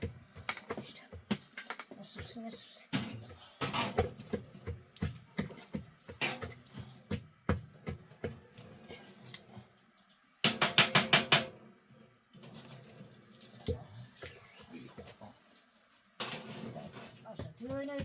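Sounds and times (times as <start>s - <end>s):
knocks and taps: 3.8s - 8.4s, 10.5s - 11.5s, 17.4s - 18.0s.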